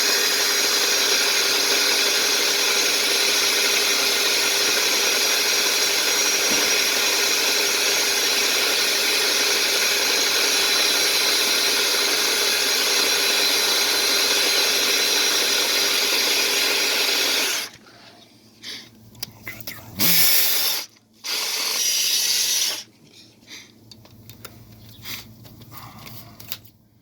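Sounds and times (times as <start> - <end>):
drill whirring in drain pipe: 0.0 - 17.8, 20.0 - 22.9.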